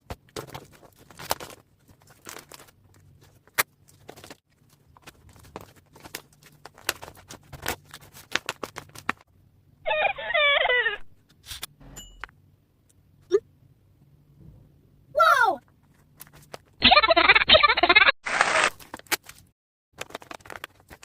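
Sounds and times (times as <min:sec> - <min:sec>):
paper rustling and crinkling: 0:00.0 - 0:09.3, 0:15.8 - 0:16.8, 0:18.3 - 0:21.0.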